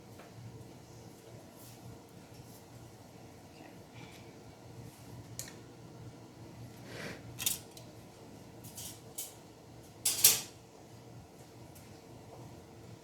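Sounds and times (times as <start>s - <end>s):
dishes and utensils clicking: 10.1s - 10.5s.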